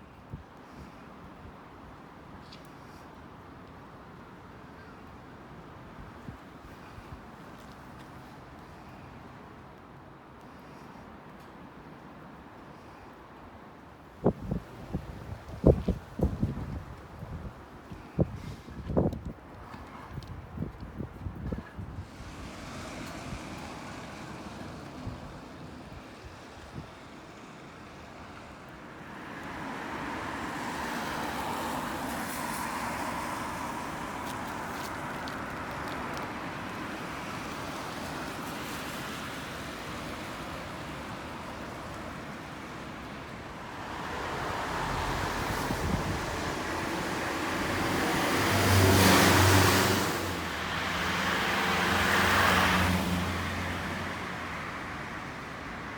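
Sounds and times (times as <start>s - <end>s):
strong wind blowing: 14.2s - 27.1s, 43.8s - 52.7s
vehicles passing by: 14.2s - 55.9s.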